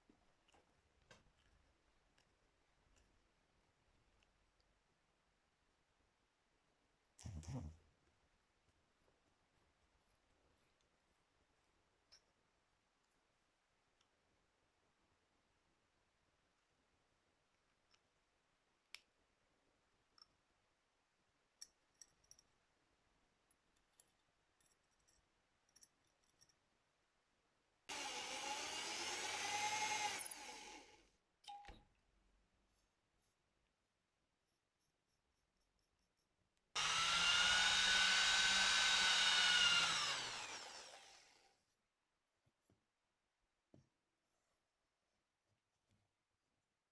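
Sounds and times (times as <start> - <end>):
power tool motor running: 27.9 - 31.0, 36.8 - 41.5.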